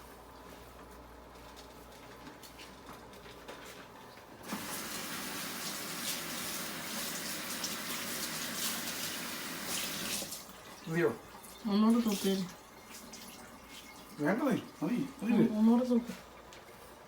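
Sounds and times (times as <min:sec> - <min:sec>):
tap water running into sink: 0:04.4 - 0:15.0.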